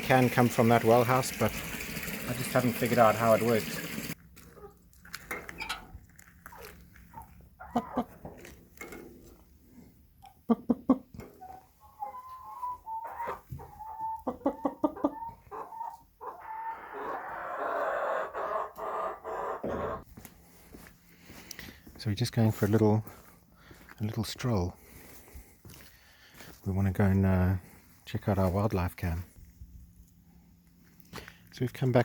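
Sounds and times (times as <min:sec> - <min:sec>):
chickens clucking: 0:06.5 - 0:08.6, 0:10.1 - 0:20.1.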